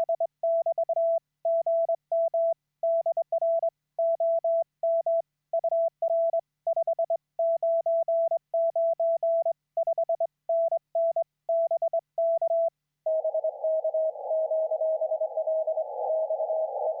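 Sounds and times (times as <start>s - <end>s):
morse code sidetone: 11.6s - 17.0s
received morse signal: 13.1s - 17.0s
radio band noise and hiss: 13.2s - 17.0s.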